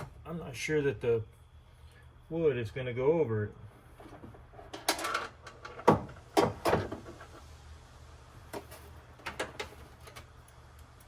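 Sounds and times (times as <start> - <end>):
objects knocking and clunking: 4.0 - 7.4.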